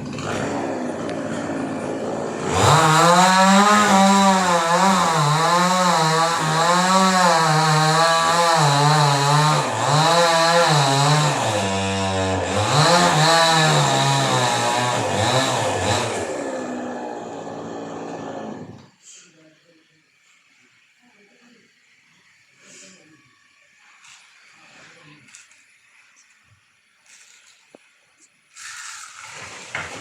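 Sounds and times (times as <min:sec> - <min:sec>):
chainsaw cutting through tree: 0:00.0 - 0:18.9, 0:28.6 - 0:30.0.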